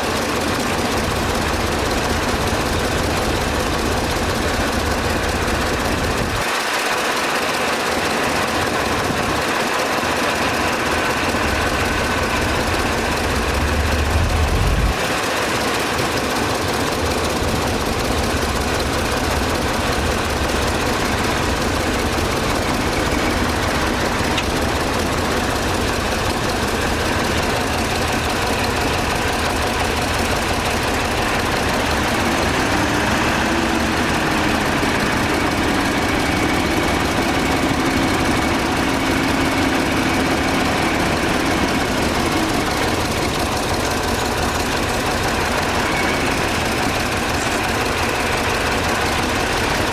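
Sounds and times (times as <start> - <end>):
heavy diesel engines running: 0.0 - 49.9
engine revving: 8.4 - 49.9
deeper rumble: 10.7 - 15.8.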